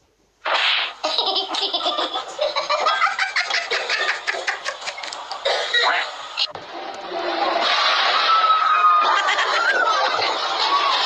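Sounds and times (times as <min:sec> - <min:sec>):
people laughing: 0:01.0 - 0:06.0, 0:07.2 - 0:11.0.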